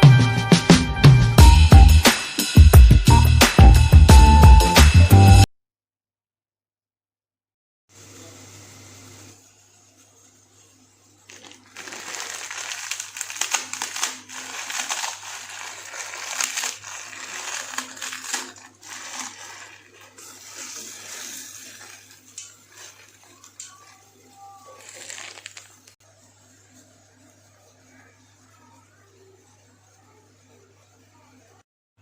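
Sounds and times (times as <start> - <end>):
noodle block crunching in packet: 11.3 - 26.0.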